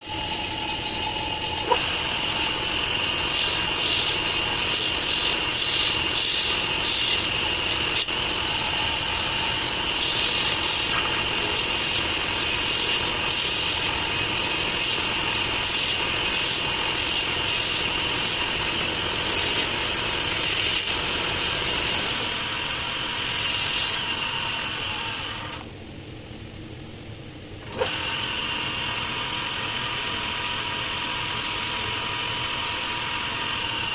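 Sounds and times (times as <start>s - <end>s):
wood lathe motor whine: 0.0s - 25.6s, 27.7s - 33.9s
tool scraping wood: 0.2s - 2.6s.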